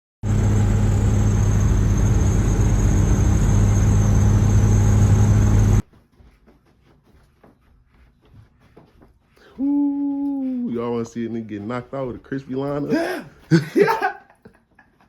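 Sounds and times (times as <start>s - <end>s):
vehicle engine idling: 0.3s - 5.8s.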